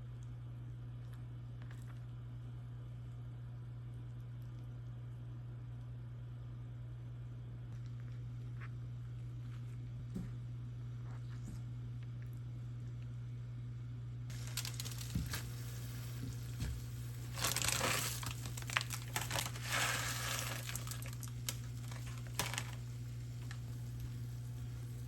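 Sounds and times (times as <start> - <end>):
steady low hum: 0.0 - 25.0
rustling and crinkling handling: 14.3 - 25.0.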